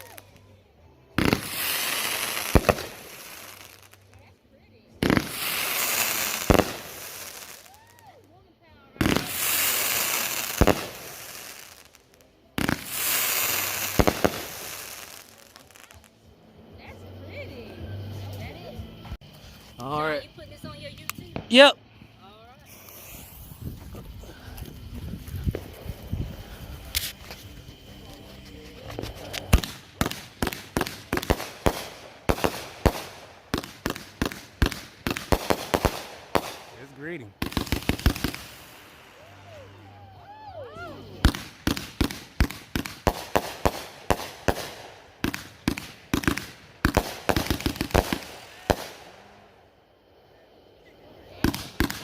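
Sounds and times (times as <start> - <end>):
firework burst with hiss: 0.0 - 4.2, 5.0 - 8.2, 9.0 - 16.2, 22.5 - 52.0
sharp firework bangs: 5.0 - 7.6, 9.0 - 11.9, 29.0 - 38.9, 41.2 - 49.3, 51.4 - 52.0.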